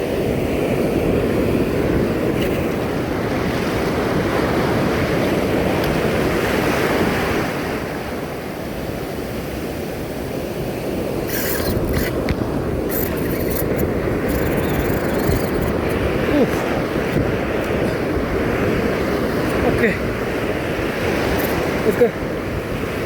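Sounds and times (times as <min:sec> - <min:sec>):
ocean surf washing: 0:00.0 - 0:23.0
wind on microphone: 0:10.7 - 0:23.0.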